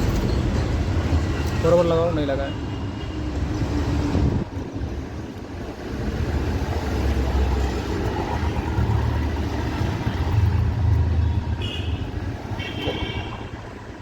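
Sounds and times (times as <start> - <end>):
vehicle engine rumble: 3.4 - 14.0.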